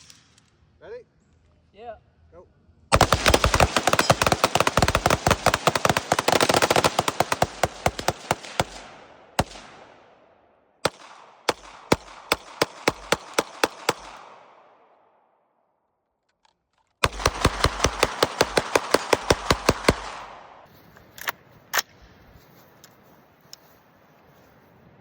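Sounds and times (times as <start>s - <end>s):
gunshots with echo: 2.9s - 10.2s, 10.8s - 14.9s, 17.0s - 20.7s.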